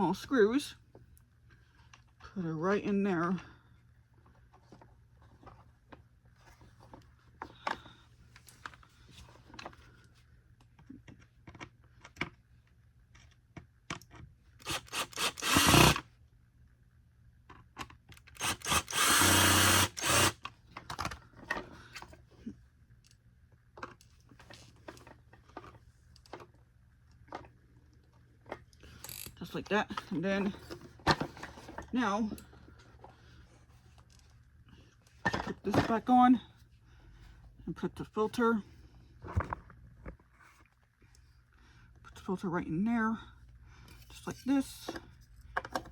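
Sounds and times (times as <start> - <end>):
power screwdriver driving screws: 14.6 - 16.0, 18.3 - 20.4, 29.0 - 29.4.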